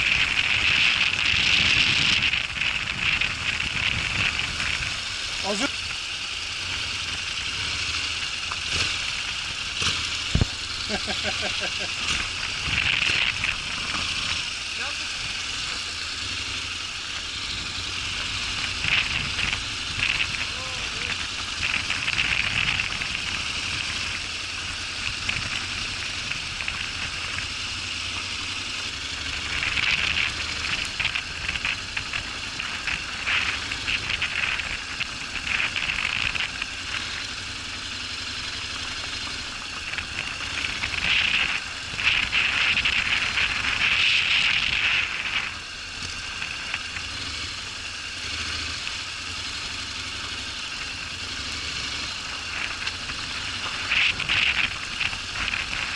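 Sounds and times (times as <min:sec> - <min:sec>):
tyres rattling over gravel: 0:00.0 - 0:49.4, 0:50.0 - 0:55.9
low motorcycle engine hum: 0:00.0 - 0:55.9.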